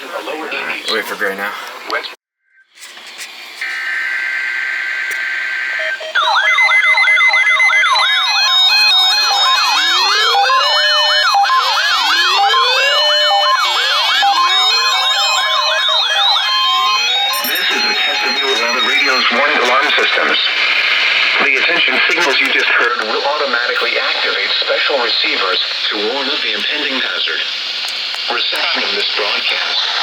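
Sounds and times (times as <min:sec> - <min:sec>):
steady warning alarm tone: 0:03.6 - 0:20.8
sweeping warble alarm tones: 0:05.8 - 0:20.0
buzzy data header tones: 0:08.0 - 0:22.4.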